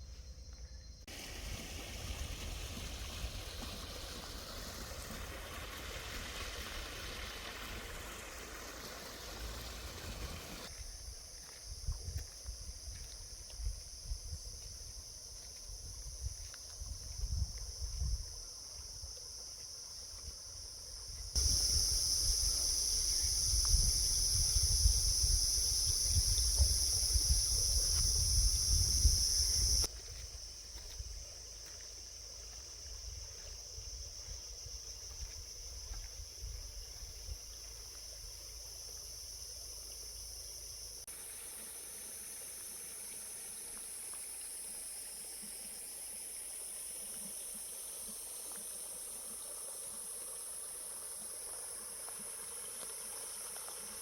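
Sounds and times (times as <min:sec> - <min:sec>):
high-pitched insect chorus: 0:00.0 - 0:54.0
wind buffeting microphone: 0:23.2 - 0:29.9.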